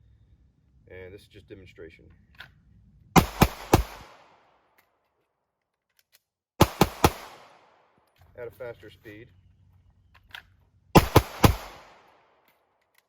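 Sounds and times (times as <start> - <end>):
pistol shots: 3.2 - 4.6, 6.6 - 8.0, 11.0 - 12.5.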